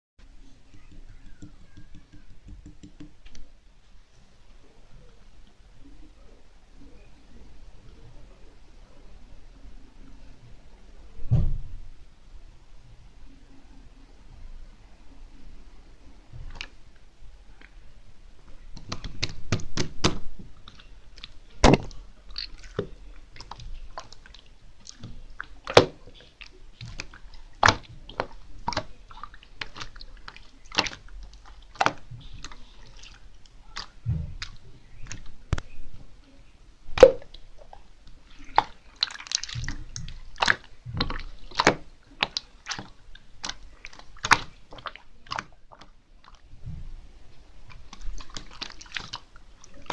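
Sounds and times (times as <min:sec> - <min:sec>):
slime squeezed with wet pops: 0:18.8 - 0:35.8, 0:37.0 - 0:37.8, 0:38.4 - 0:45.9.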